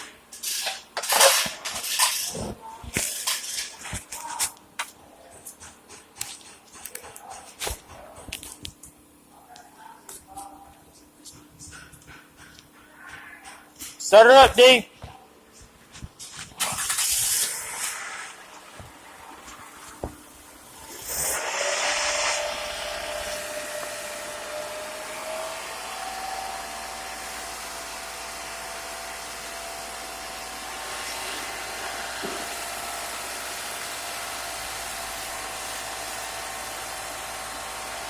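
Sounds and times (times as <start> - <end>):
thin whine: 16.6 - 28.0.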